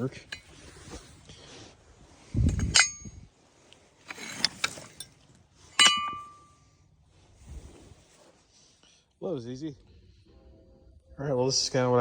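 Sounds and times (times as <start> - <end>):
metal scraping and clinking: 2.5 - 3.3, 4.0 - 6.6
ringing metal clang: 2.6 - 3.2, 5.8 - 6.7.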